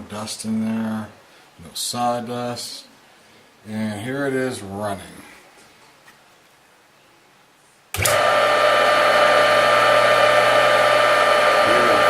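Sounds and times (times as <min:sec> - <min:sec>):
table saw motor humming: 0:08.0 - 0:12.0.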